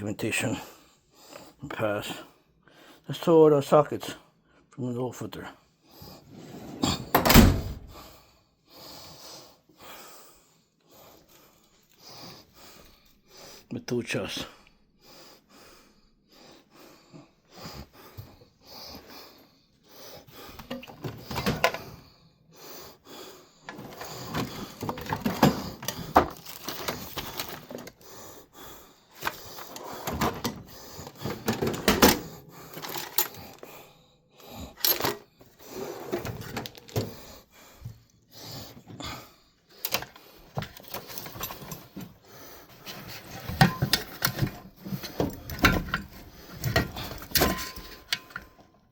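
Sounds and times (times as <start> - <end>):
hand tools clinking and rattling: 20.6 - 22.0, 23.7 - 27.9, 29.2 - 33.7, 34.8 - 35.2, 39.8 - 42.2, 42.8 - 48.6.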